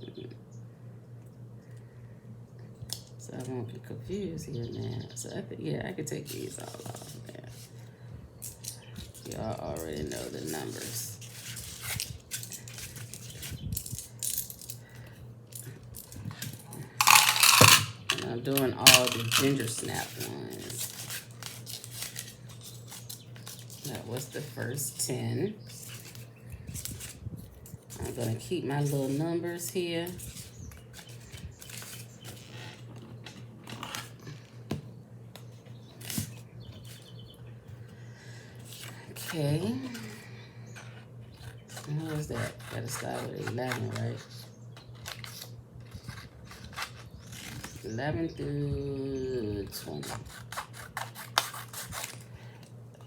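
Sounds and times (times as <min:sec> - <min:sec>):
steady low hum: 0:00.0 - 0:53.0
small objects clicking and rustling: 0:08.4 - 0:14.8, 0:15.5 - 0:23.9
metal charms clicking together: 0:17.0 - 0:18.3, 0:18.9 - 0:19.8.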